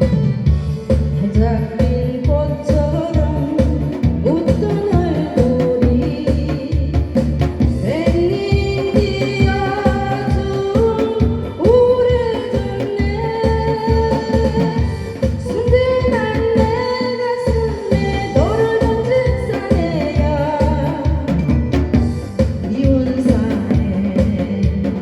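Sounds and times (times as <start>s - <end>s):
trot music with thumping beat: 0.0s - 16.9s, 17.5s - 25.0s.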